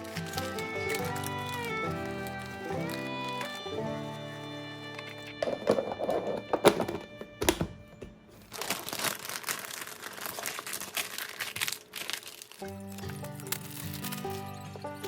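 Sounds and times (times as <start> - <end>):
packaging crinkling: 0.0 - 3.7, 5.4 - 14.6
background music: 0.0 - 8.0, 12.7 - 15.0.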